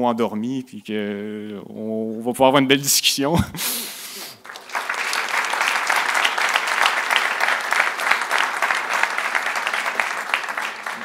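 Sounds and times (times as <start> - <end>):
audience applauding: 4.4 - 11.0.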